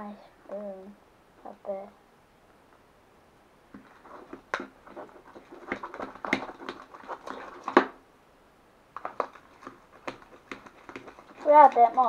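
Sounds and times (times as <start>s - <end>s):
slime squelching: 3.7s - 8.0s, 8.9s - 12.0s.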